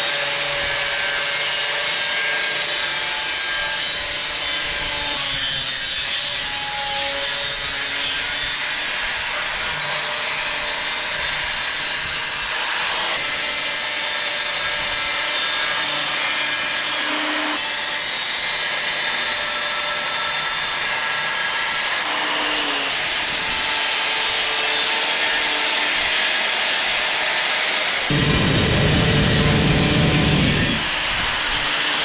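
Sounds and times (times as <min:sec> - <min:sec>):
power tool running on steel: 0:00.0 - 0:32.0
low rumble: 0:28.1 - 0:30.8.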